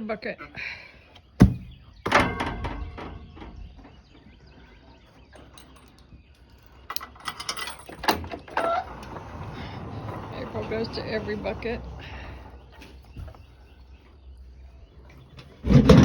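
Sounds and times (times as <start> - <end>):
feed buckets clattering: 1.4 - 4.2, 7.2 - 13.5, 15.1 - 16.0.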